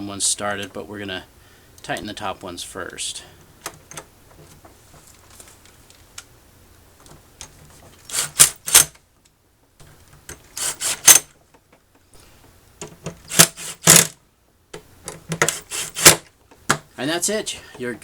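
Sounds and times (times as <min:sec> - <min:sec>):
drill driving screws into plastic: 0:08.0 - 0:08.9, 0:10.5 - 0:11.3, 0:13.2 - 0:14.2, 0:15.4 - 0:16.3.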